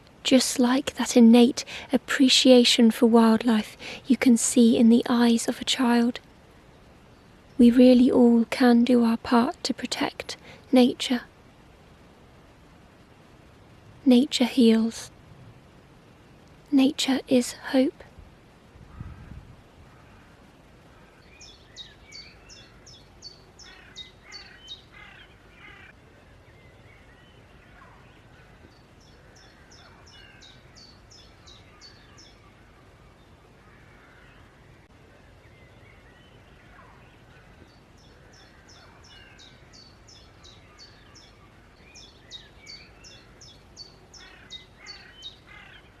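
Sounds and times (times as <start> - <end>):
faint background hiss: 0.0 - 46.0
birds singing high repeated notes: 18.9 - 46.0.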